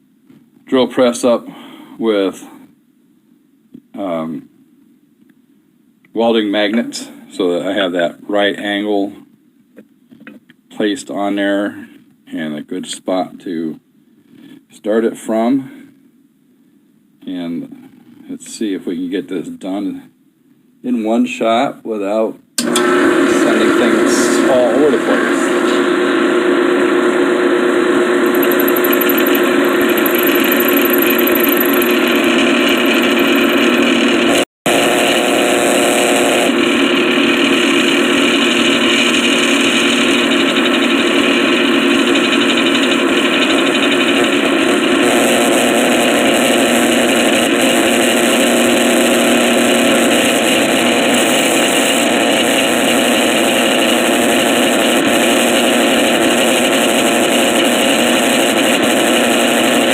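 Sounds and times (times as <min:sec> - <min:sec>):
drill boring through steel: 0:22.6 - 0:27.2, 0:27.8 - 0:59.9
engine running: 0:22.6 - 0:59.9.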